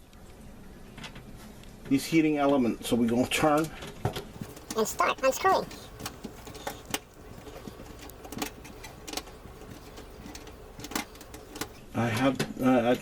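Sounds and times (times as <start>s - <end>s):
faint low hum: 4.4s - 11.8s.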